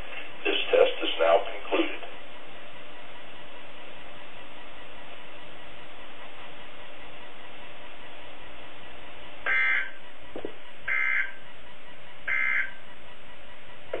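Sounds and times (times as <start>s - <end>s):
radio static hiss: 0.0s - 14.0s
alert data tone bursts: 9.5s - 10.0s, 10.9s - 11.4s, 12.3s - 12.8s.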